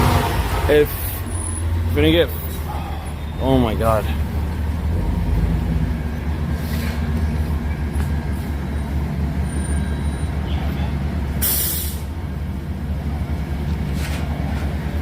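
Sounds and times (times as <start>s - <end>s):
vehicle engine rumbling: 0.0s - 15.0s
short hiss: 11.4s - 12.1s.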